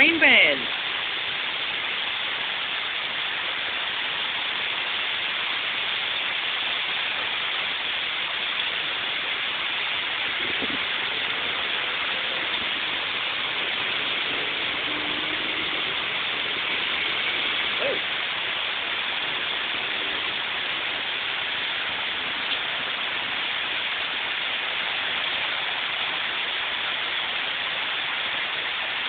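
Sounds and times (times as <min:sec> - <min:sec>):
heavy rain pouring: 0:00.0 - 0:29.0.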